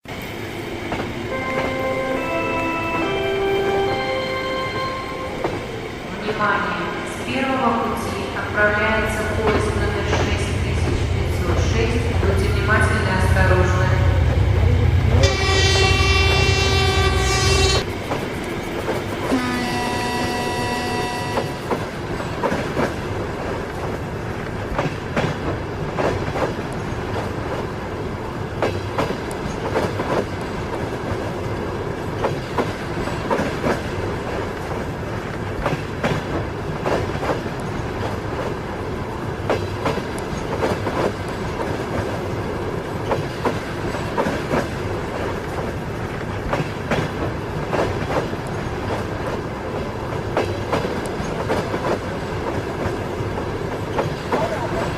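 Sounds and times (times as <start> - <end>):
train rumbling: 0.0 - 54.9
train horn blasts: 15.1 - 17.9, 19.3 - 21.6.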